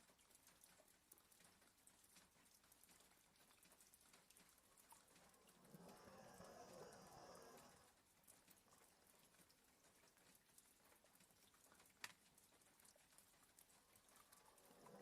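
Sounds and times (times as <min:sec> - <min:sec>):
faint ticks: 0:00.0 - 0:15.0
dog snoring softly: 0:05.1 - 0:09.4, 0:14.1 - 0:15.0.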